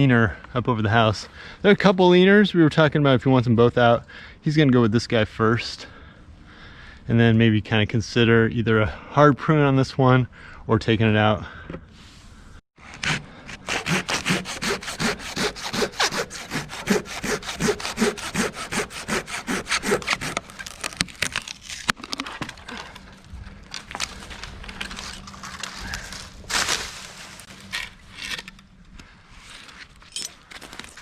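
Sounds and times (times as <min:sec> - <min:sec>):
hand saw cutting wood: 0:12.8 - 0:22.0.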